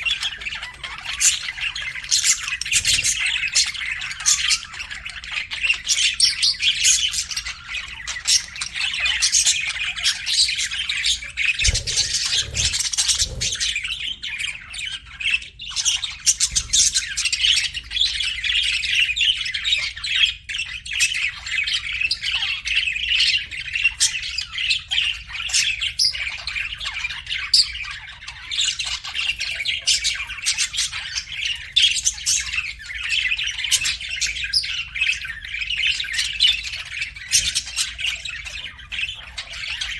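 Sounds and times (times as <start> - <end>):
budgerigars chattering and chirping: 0.0 - 39.9.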